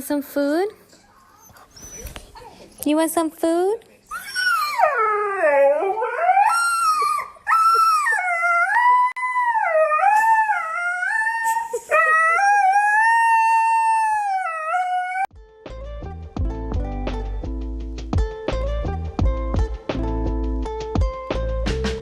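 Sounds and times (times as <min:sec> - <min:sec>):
dog howling: 0:04.1 - 0:15.3.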